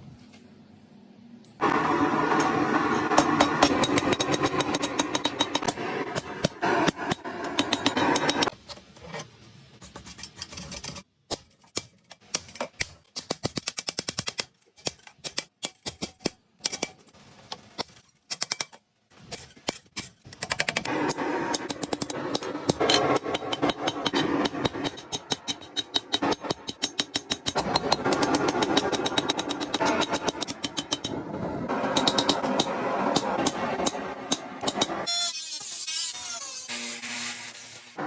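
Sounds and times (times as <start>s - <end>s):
hammer striking steel: 2.2s - 8.5s, 20.5s - 35.1s
dense rushing noise: 20.9s - 26.6s, 27.4s - 35.1s.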